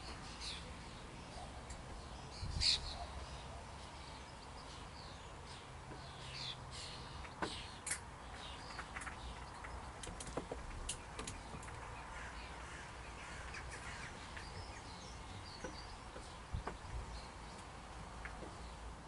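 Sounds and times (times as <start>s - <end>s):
birds chirping faintly: 0.0s - 19.0s.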